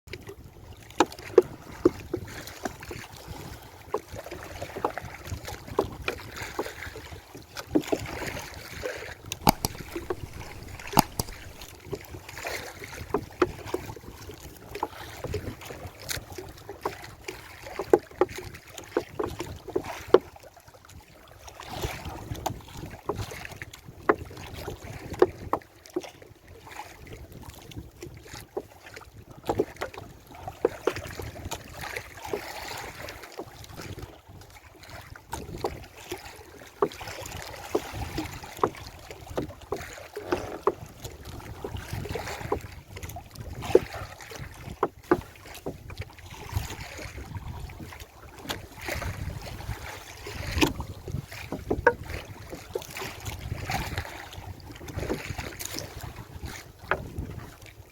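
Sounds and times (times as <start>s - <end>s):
water rushing and splashing: 0.7s - 20.1s, 34.8s - 57.7s
wind buffeting microphone: 7.8s - 16.4s, 37.3s - 57.7s
knocks against boat hull: 9.3s - 11.7s, 37.8s - 42.8s, 50.5s - 52.3s.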